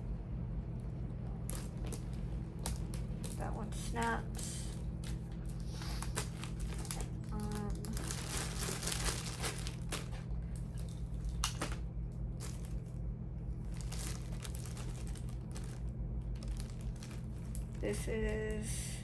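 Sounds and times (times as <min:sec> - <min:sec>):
steady low hum: 0:00.0 - 0:19.0
plastic rustling and crinkling: 0:04.3 - 0:13.0, 0:13.6 - 0:18.0.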